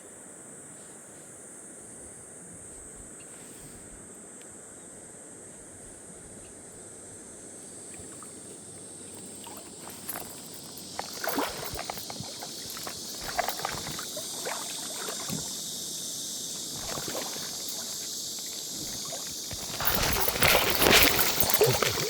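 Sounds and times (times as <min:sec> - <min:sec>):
legs wading through stream water: 0:09.1 - 0:22.0
steady high hiss: 0:09.6 - 0:22.0.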